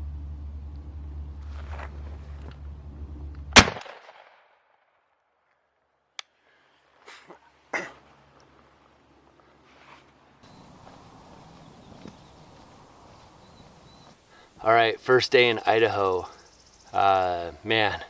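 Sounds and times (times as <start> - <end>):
steady low rumble: 0.0 - 3.8, 10.5 - 18.0
loud shotgun blast: 3.5 - 4.5.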